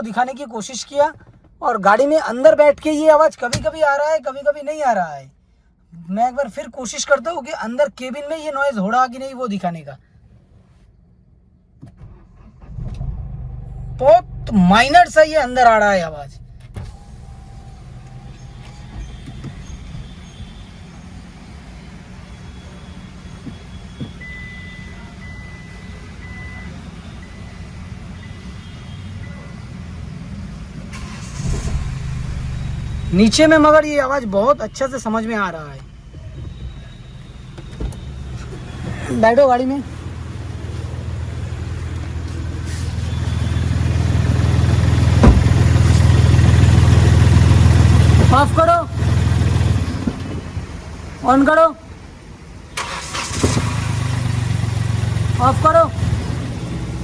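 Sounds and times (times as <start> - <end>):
car engine idling: 11.3 - 28.2, 29.9 - 51.4, 52.0 - 57.0
sharp knock: 45.2 - 45.6.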